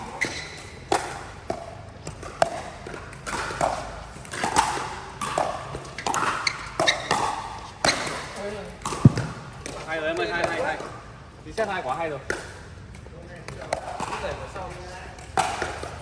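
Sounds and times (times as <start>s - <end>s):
paddles hitting plastic ball: 0.2s - 11.0s
ball bouncing on court: 8.8s - 10.6s.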